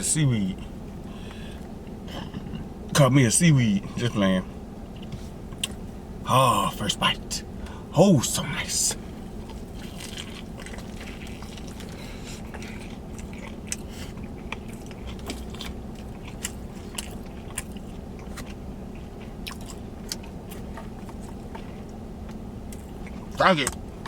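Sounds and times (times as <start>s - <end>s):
steady low hum: 0.0s - 24.0s
wet crunchy chewing: 9.0s - 24.0s.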